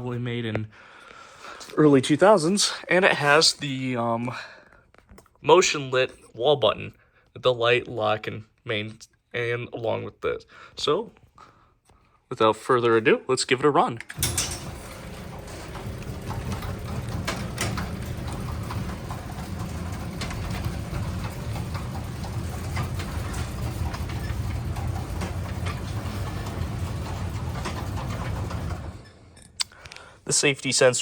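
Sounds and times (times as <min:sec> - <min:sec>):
garage door opener motor drone: 0:14.1 - 0:29.6.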